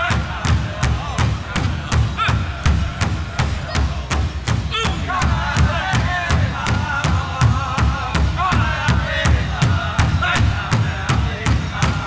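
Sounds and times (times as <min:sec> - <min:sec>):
fast beats on large drum: 0:00.0 - 0:12.0
high wavering group singing: 0:00.0 - 0:12.0.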